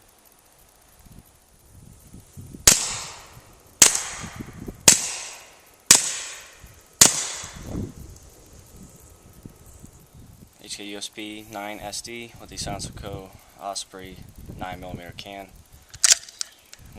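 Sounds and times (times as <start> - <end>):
suppressed pistol shots: 2.7 - 7.7.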